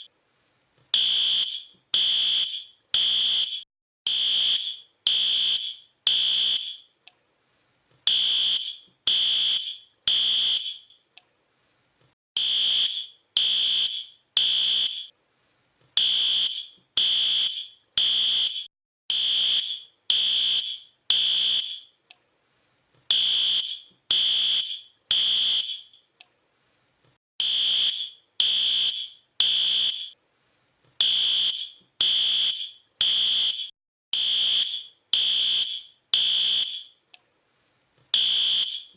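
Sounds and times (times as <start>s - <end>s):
fire alarm beeping: 1.0s - 6.9s, 8.1s - 11.0s, 12.4s - 15.1s, 16.0s - 21.9s, 23.1s - 26.0s, 27.4s - 30.2s, 31.0s - 37.0s, 38.2s - 38.9s.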